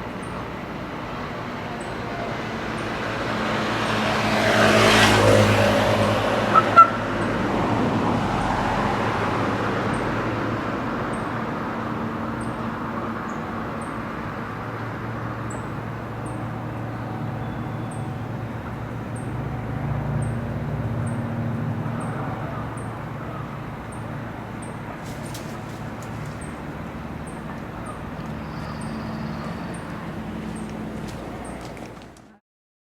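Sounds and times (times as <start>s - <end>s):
engine hum: 0.0s - 32.4s
road noise: 0.0s - 32.4s.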